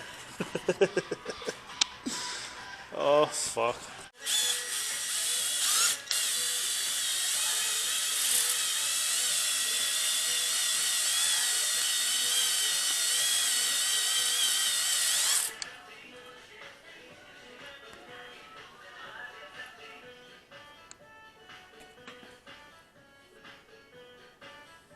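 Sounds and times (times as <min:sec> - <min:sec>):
power tool whining: 0:04.2 - 0:15.6.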